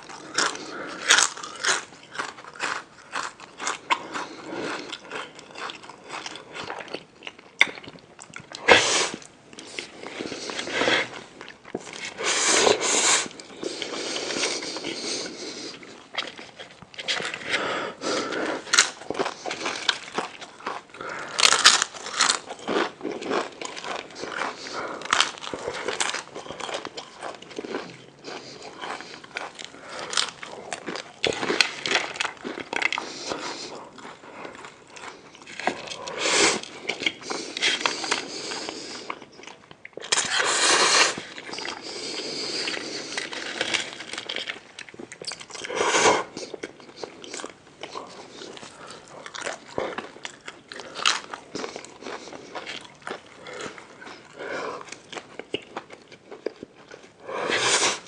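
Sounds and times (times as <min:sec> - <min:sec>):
person chewing crunchy food: 0:00.0 - 0:58.0.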